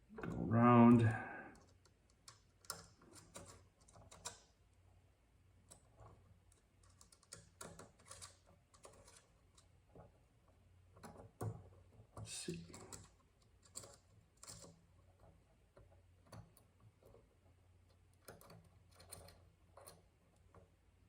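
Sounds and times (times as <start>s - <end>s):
allen key clicking on set screws: 5.6s - 9.6s.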